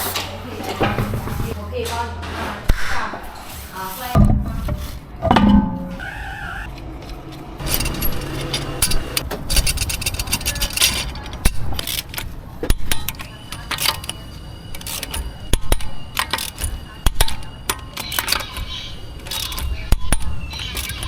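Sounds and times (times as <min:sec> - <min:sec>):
sharp clicks and metallic clinks: 0:06.7 - 0:21.0.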